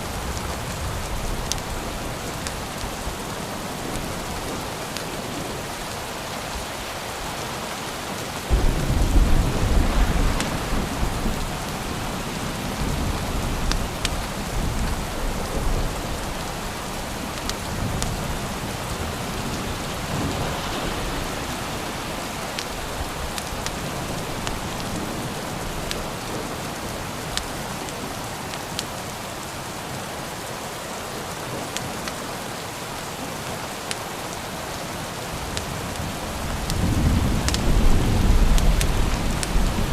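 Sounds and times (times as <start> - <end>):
steady rainfall: 0.0 - 39.9
thunder rumbling: 8.5 - 26.5, 35.7 - 39.9.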